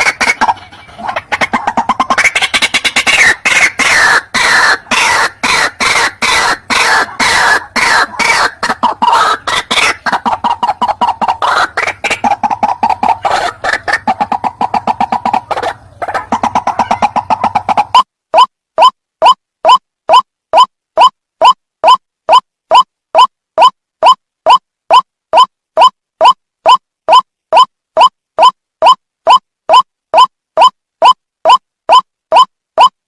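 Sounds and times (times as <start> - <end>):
bird calling harsh notes: 0.0 - 32.9.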